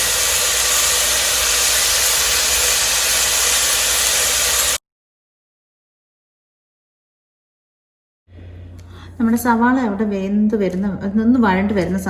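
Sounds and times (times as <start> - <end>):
onions sizzling in hot oil: 0.0 - 4.8.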